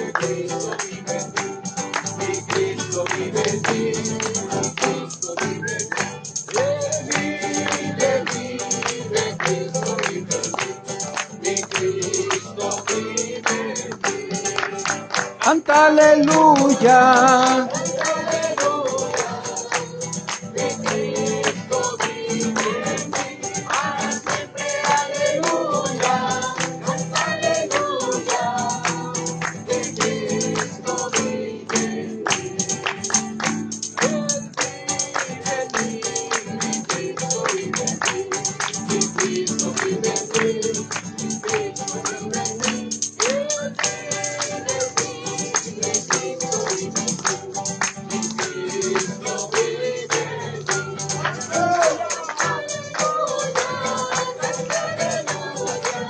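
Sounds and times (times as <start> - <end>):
people singing together: 0.0 - 56.0
tambourine: 0.0 - 56.0.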